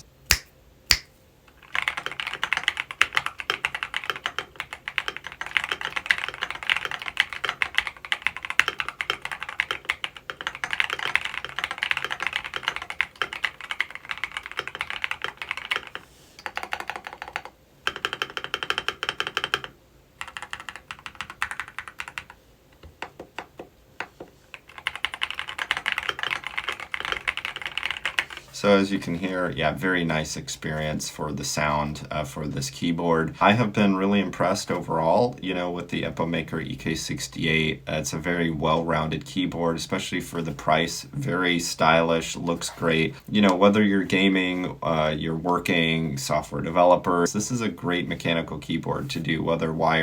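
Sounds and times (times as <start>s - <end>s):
mechanical keyboard typing: 1.8s - 22.4s, 24.5s - 28.4s.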